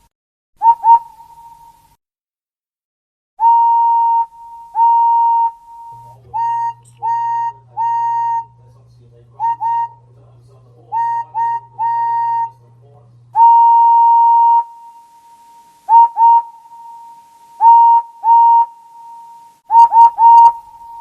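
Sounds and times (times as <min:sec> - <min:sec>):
steam engine whistle blasts: 0:00.6 - 0:01.9, 0:03.4 - 0:08.6, 0:09.4 - 0:10.1, 0:10.9 - 0:12.6, 0:13.4 - 0:21.0.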